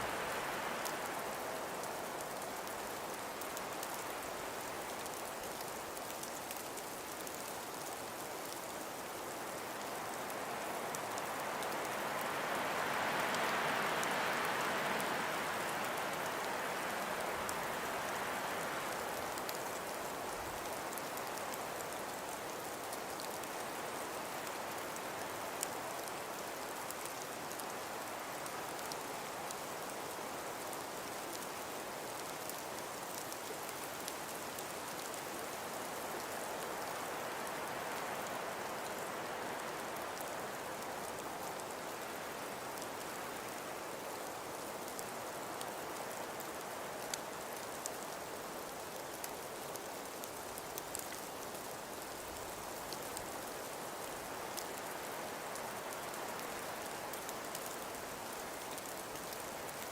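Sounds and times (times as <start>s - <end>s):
falling snow: 0.0s - 23.5s
faint ticks: 1.8s - 12.4s, 17.2s - 59.9s.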